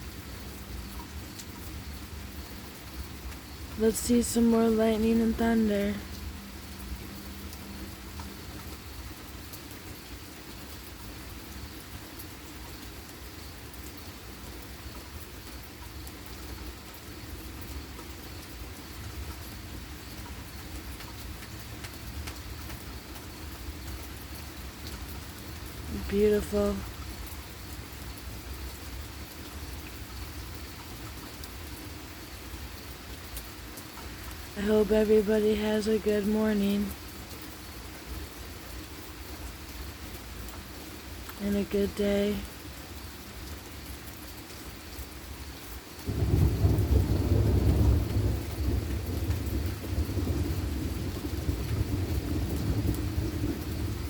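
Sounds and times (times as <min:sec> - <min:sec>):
steady rain falling: 0:00.0 - 0:54.0
rolling thunder: 0:46.1 - 0:54.0.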